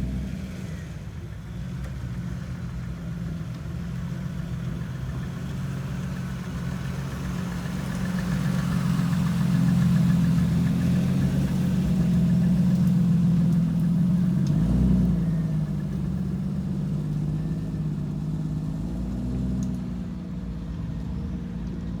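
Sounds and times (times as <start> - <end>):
vehicle engine revving: 5.9 - 22.0.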